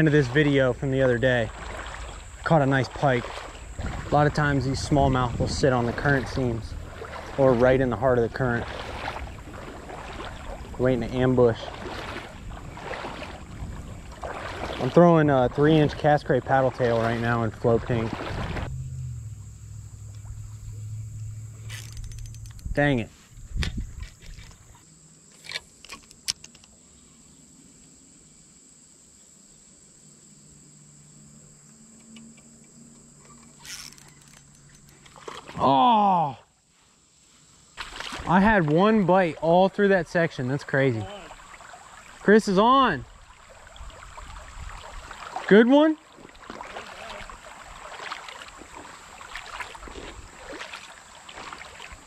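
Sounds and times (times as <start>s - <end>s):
creek water splashing: 0.0s - 26.9s, 32.8s - 52.0s
insects trilling: 0.0s - 52.0s
faint low hum: 16.0s - 25.2s.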